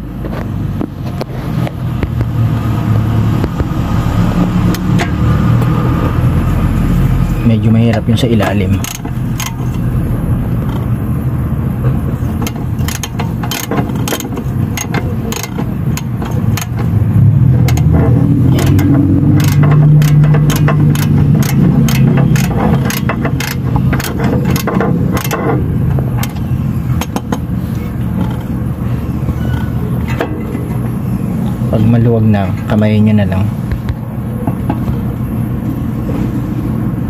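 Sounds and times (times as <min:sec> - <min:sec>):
car engine running: 0:00.0 - 0:37.0
socket wrench clicking: 0:08.2 - 0:09.8, 0:12.4 - 0:17.0, 0:17.6 - 0:27.4.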